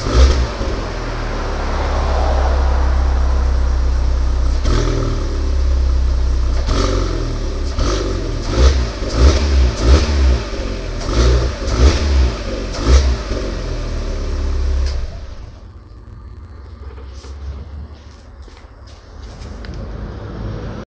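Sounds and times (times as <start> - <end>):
car engine revving: 0.0 - 20.8.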